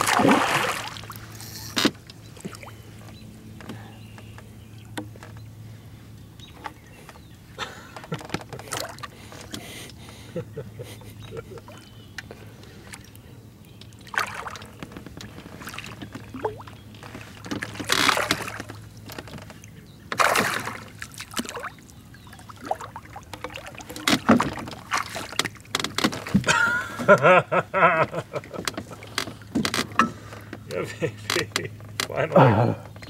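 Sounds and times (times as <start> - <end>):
water splashing: 0.0 - 1.8, 14.0 - 19.5, 20.1 - 26.5
boat hum: 0.0 - 33.0.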